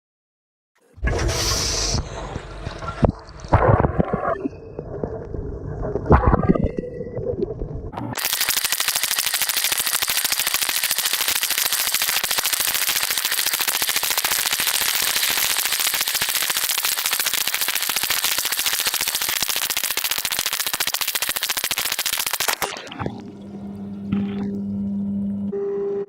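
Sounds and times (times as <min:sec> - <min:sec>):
dishwasher water jets spraying: 0:08.2 - 0:23.2.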